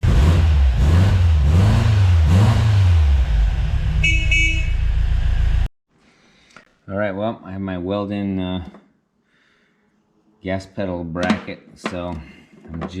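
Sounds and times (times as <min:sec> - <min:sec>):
car engine revving: 0:00.0 - 0:05.7
car horn toots: 0:03.9 - 0:05.1.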